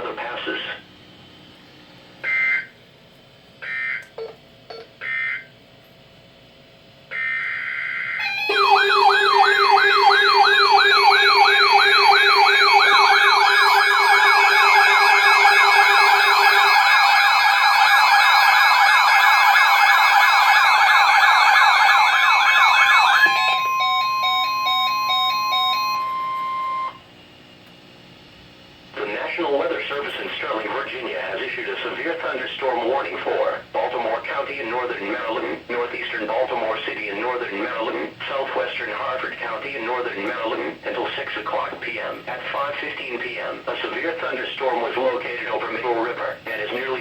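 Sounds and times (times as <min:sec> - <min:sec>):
warbling electronic alarm: 0:02.2 - 0:02.8, 0:03.6 - 0:05.6, 0:07.1 - 0:27.1
steady tone with beeping: 0:08.2 - 0:27.0.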